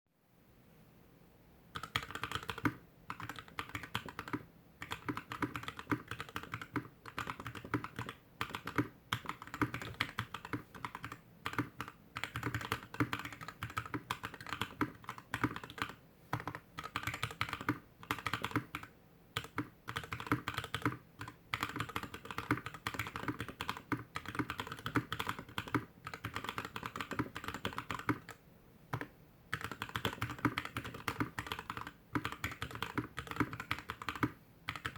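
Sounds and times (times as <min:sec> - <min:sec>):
mechanical keyboard typing: 0:01.7 - 0:34.9.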